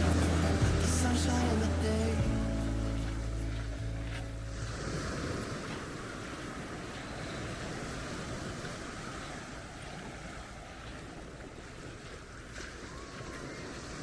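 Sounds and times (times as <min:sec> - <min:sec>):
sea surf washing on beach: 0:00.0 - 0:14.0.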